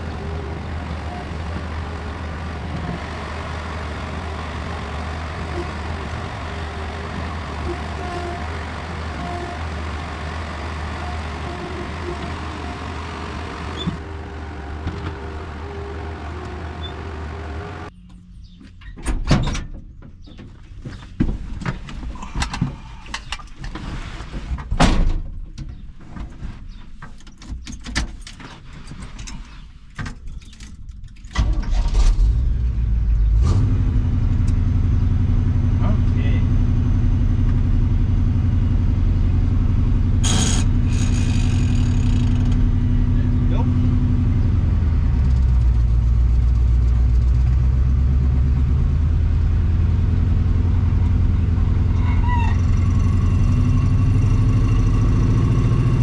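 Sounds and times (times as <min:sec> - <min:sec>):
diesel engine running: 0:00.0 - 0:18.5, 0:31.4 - 0:56.0
clunks and knocks: 0:14.8 - 0:15.4, 0:18.0 - 0:31.6.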